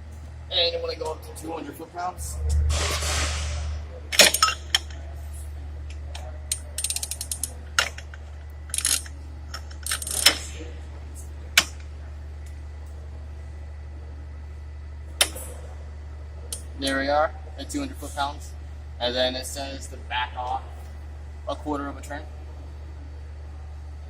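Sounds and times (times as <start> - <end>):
low hum: 0.0 - 24.0
ratchet wrench clicking: 4.2 - 4.9, 6.5 - 8.0, 8.7 - 10.4.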